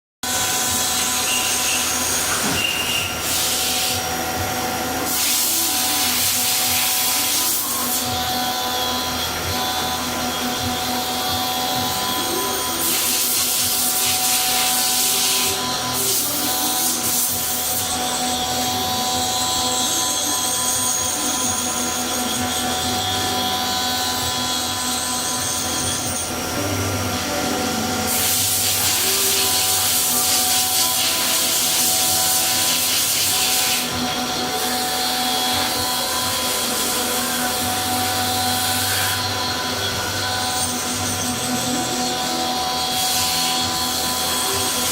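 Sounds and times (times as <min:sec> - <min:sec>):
motor whine: 0:00.2 - 0:44.9
high hissing cutting noise: 0:00.3 - 0:04.2, 0:12.2 - 0:17.9, 0:24.0 - 0:44.9.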